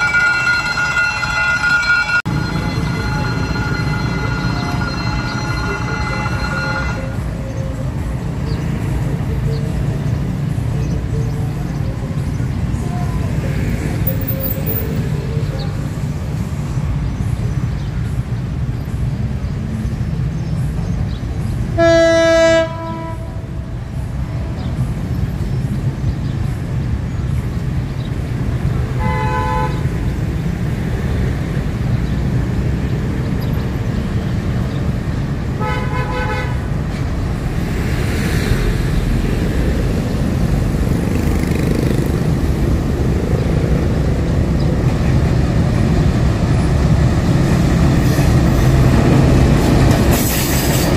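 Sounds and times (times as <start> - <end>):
locomotive horn blasts: 0.0 - 7.5, 21.7 - 23.8, 28.9 - 30.0, 35.6 - 36.8
diesel locomotive rumbling: 0.0 - 50.9.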